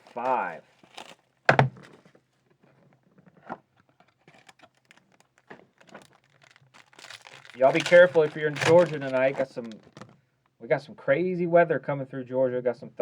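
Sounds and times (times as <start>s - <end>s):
sharp knock on cardboard box: 1.5s - 1.8s.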